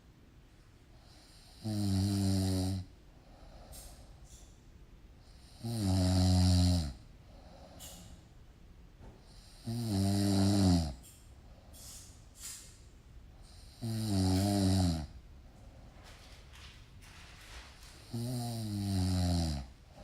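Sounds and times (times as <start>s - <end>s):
person snoring: 1.1s - 2.9s, 5.4s - 7.0s, 9.4s - 11.0s, 13.5s - 15.2s, 18.0s - 19.8s
breathing noise: 3.2s - 4.5s.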